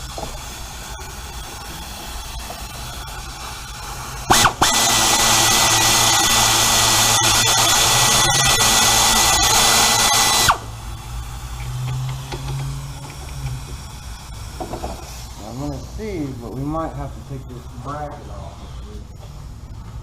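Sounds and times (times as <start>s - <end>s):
power tool whining: 0.0s - 15.0s.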